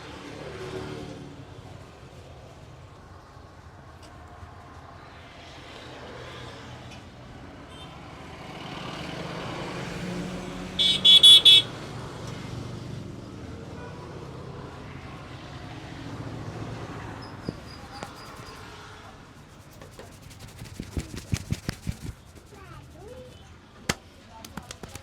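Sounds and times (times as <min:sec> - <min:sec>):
road traffic passing: 0:00.0 - 0:25.0
vehicle horn honking: 0:10.8 - 0:11.7.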